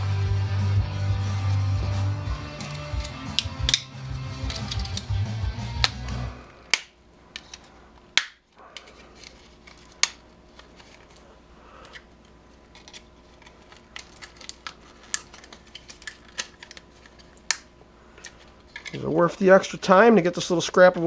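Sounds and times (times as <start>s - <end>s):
background music: 0.0s - 6.8s
tools and metal parts clicking: 18.2s - 19.1s.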